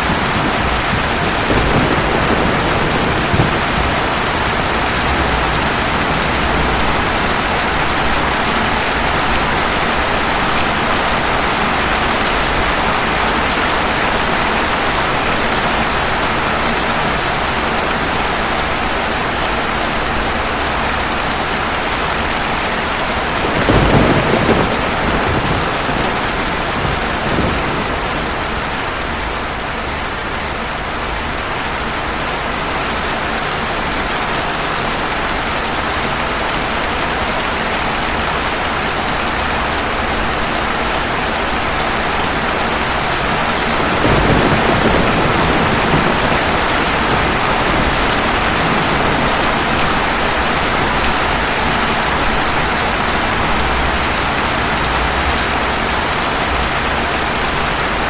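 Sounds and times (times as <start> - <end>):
thunder: 0.0 - 16.2, 23.3 - 29.5, 43.3 - 55.5
heavy rain falling: 0.0 - 58.0.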